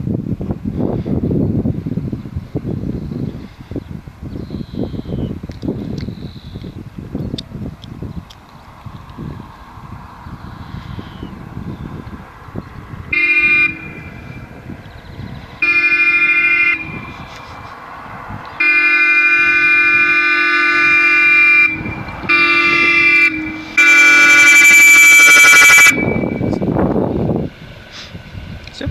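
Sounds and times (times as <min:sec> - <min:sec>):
car horn blasts: 0:13.1 - 0:14.5, 0:15.6 - 0:17.1, 0:18.5 - 0:26.8.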